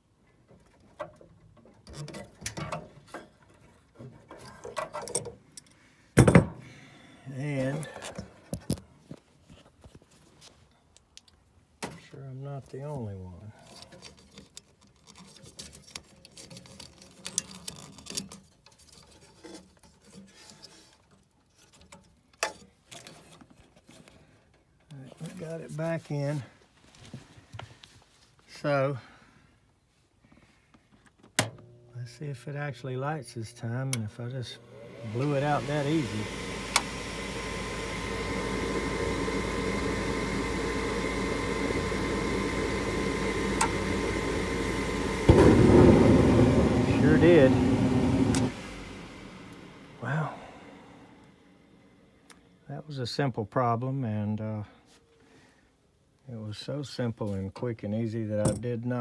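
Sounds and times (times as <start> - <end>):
gas furnace rushing hum: 33.4 - 51.9.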